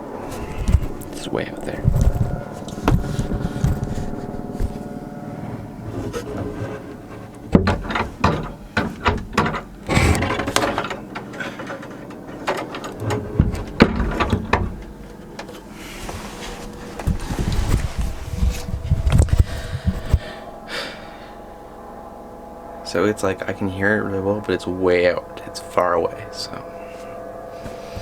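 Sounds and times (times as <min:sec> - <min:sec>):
faint steady hum: 0:00.0 - 0:28.0
rustling and knocking: 0:00.2 - 0:05.0, 0:05.9 - 0:20.3.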